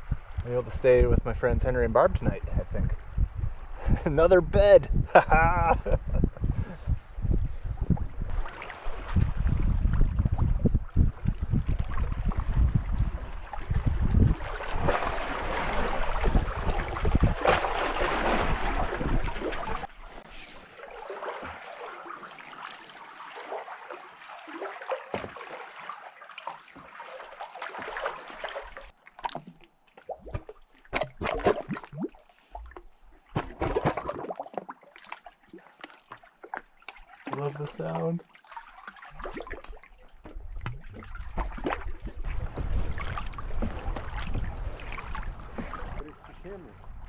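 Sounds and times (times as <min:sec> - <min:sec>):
wind buffeting microphone: 0:00.0 - 0:19.9, 0:40.4 - 0:47.0
water sloshing around kayak: 0:02.6 - 0:47.0.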